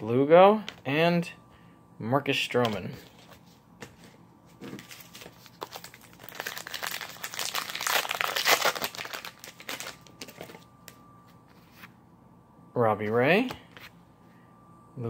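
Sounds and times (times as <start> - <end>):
wrapper crinkling: 4.7 - 10.6.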